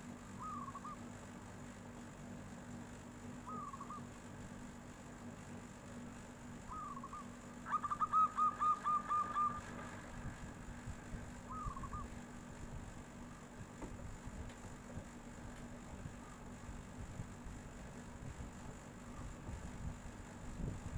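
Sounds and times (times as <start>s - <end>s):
dove cooing: 0.2s - 1.1s, 3.4s - 4.2s, 6.6s - 12.3s.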